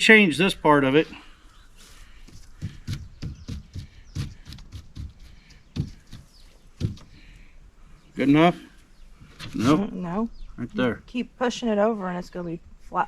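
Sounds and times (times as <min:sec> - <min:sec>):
boards knocking and tapping: 0:02.6 - 0:07.3
loud thumps: 0:02.6 - 0:07.3.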